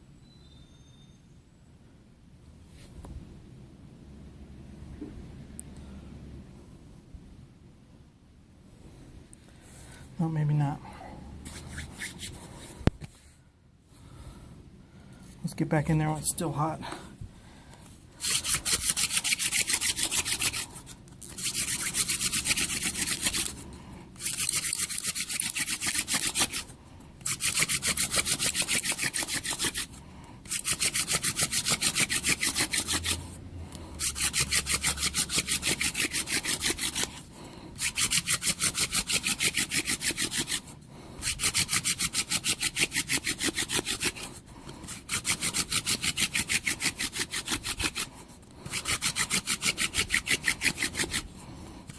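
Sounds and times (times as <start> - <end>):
hand drill spindle rasping on wood: 18.2 - 20.6, 21.3 - 23.5, 24.2 - 33.2, 34.0 - 37.2, 37.8 - 44.3, 44.9 - 51.3.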